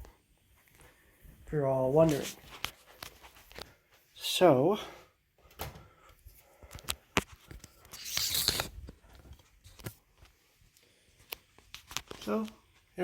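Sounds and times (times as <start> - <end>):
rustling scrape: 7.9 - 8.8.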